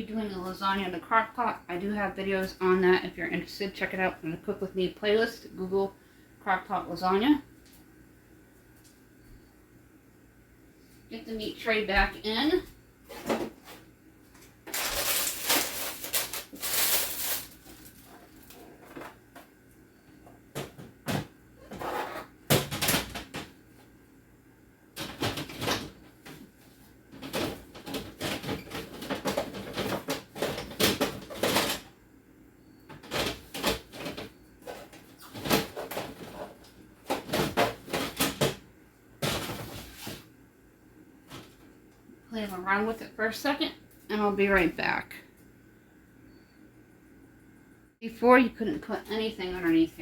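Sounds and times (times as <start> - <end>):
plastic containers clacking and knocking: 25.0 - 26.4, 27.1 - 31.9, 32.9 - 40.0.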